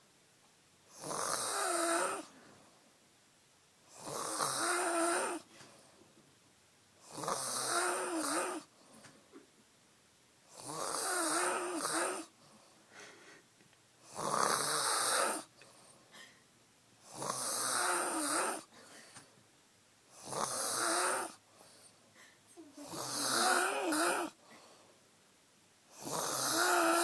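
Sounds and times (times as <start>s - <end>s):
woman snoring loudly: 1.0s - 2.4s, 3.9s - 5.5s, 7.1s - 8.7s, 10.5s - 12.3s, 14.1s - 15.5s, 17.1s - 18.7s, 20.2s - 21.4s, 22.6s - 24.4s, 25.9s - 27.0s
quiet breathing: 2.2s - 3.1s, 4.8s - 6.3s, 8.1s - 9.6s, 11.5s - 14.2s, 15.0s - 17.4s, 18.5s - 25.2s.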